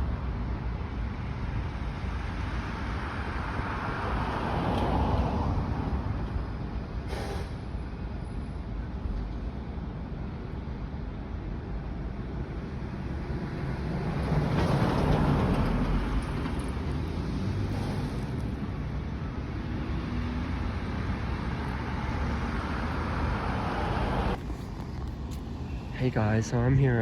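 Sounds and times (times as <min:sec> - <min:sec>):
train rumbling and rattling: 0:04.3 - 0:20.1.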